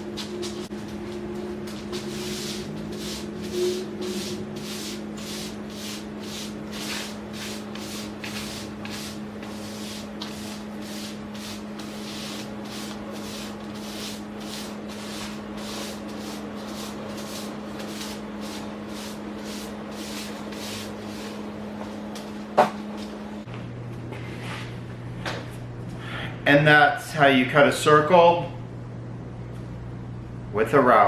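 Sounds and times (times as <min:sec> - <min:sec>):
steady low hum: 0:00.0 - 0:31.0
sandpaper strokes on wood: 0:01.6 - 0:21.4.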